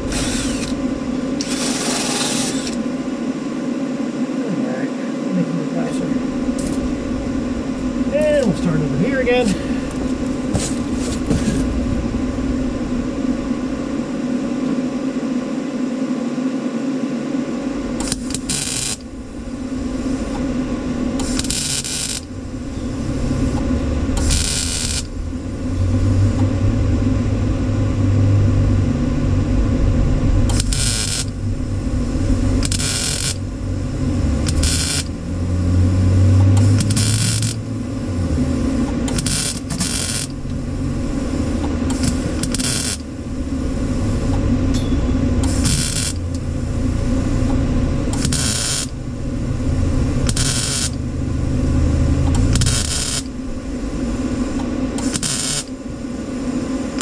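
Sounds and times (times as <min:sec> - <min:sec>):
welding bursts: 0:00.0 - 0:02.8, 0:18.0 - 0:20.4, 0:21.2 - 0:23.6, 0:24.2 - 0:25.2, 0:30.5 - 0:31.4, 0:32.4 - 0:35.4, 0:36.6 - 0:37.7, 0:39.0 - 0:43.2, 0:45.4 - 0:46.5, 0:48.1 - 0:49.0, 0:50.2 - 0:51.0, 0:52.3 - 0:55.8
steady shop hum: 0:00.0 - 0:57.0.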